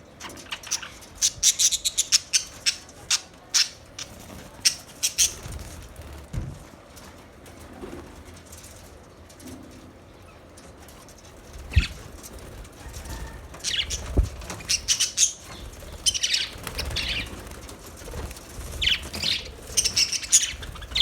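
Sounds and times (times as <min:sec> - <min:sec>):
low thump: 0:06.3 - 0:06.7
budgerigars chirping: 0:12.8 - 0:17.4, 0:18.8 - 0:21.0.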